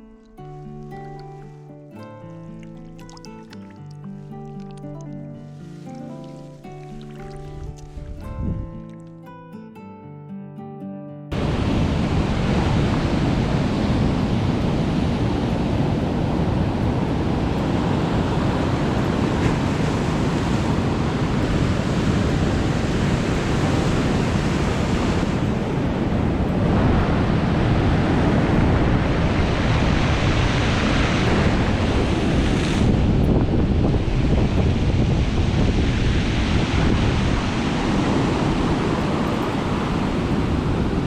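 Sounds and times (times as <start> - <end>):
sea surf: 0.0 - 9.1, 11.3 - 41.0
wind buffeting microphone: 7.3 - 8.9, 11.3 - 41.0.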